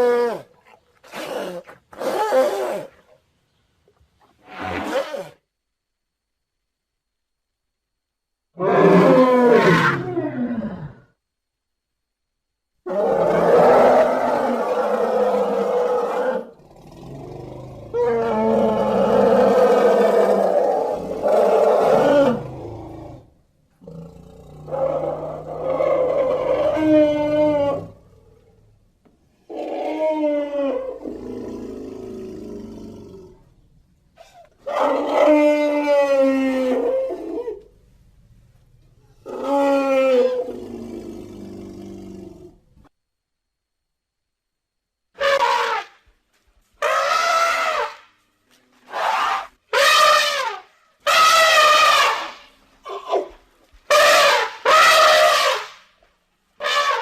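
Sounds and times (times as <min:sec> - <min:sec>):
elephant trumpeting: 0:45.2 - 0:46.0, 0:46.8 - 0:48.1, 0:48.9 - 0:53.3, 0:53.9 - 0:55.8, 0:56.6 - 0:57.0.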